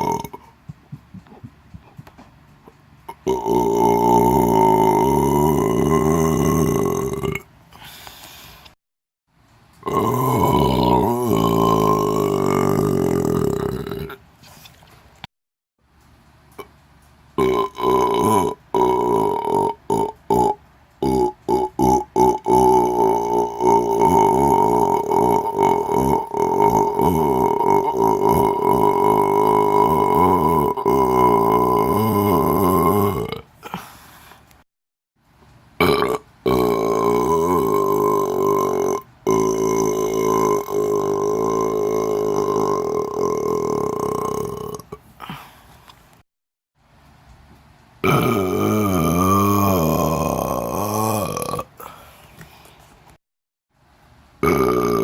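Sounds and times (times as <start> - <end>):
long human burps: 0.0 - 0.6, 3.1 - 7.5, 9.8 - 14.2, 17.4 - 34.0, 35.8 - 45.6, 48.0 - 52.1, 54.4 - 55.0
person belching: 0.0 - 0.6, 3.1 - 7.5, 9.8 - 14.2, 17.4 - 33.9, 35.8 - 45.5, 48.0 - 52.1, 54.4 - 55.0.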